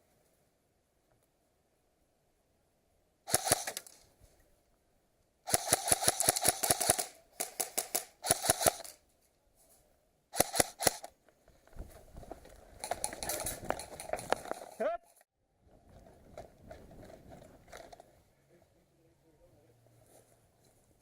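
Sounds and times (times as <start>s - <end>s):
airsoft guns firing bursts: 3.3s - 4.0s, 5.5s - 9.0s, 10.4s - 11.1s.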